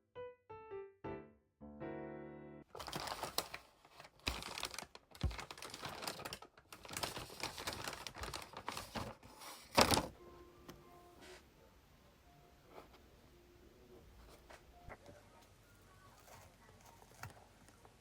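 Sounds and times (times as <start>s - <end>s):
crinkling and crackling: 2.7s - 10.2s, 14.1s - 18.0s.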